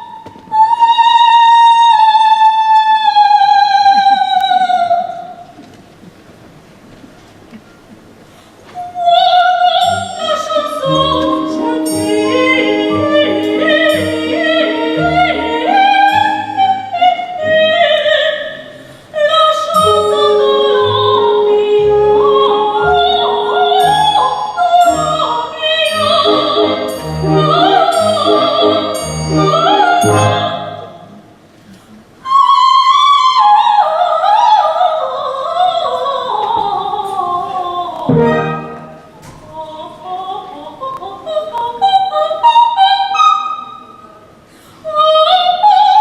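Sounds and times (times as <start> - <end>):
operatic singing: 8.8 - 31.2, 32.7 - 43.2
orchestra playing: 10.7 - 18.1, 19.8 - 31.2, 38.1 - 39.2.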